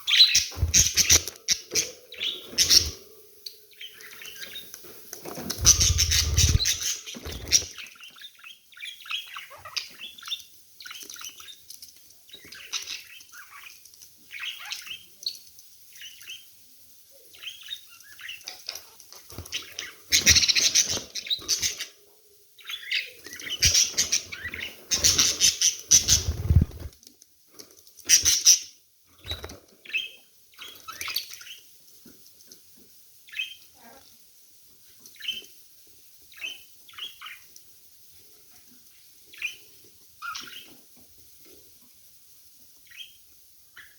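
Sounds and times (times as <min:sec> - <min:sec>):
budgerigars chirping: 0:00.1 - 0:03.0, 0:05.4 - 0:11.5, 0:19.4 - 0:22.0, 0:22.7 - 0:26.9
wings flapping: 0:00.5 - 0:01.6, 0:05.2 - 0:07.9, 0:25.0 - 0:27.0.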